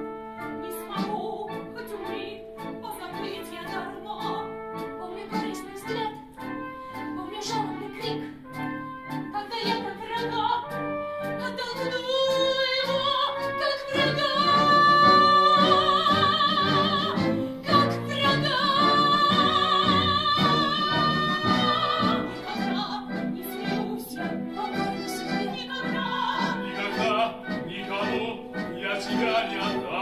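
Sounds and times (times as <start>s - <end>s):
rhythmic accompaniment: 0.0s - 30.0s
operatic vocal trio singing: 12.3s - 30.0s.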